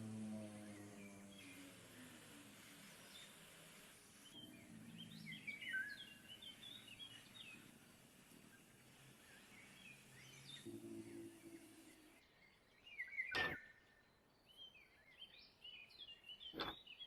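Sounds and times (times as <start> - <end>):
low steady hum: 0.0 - 12.8
faint bird chirps: 0.0 - 17.0.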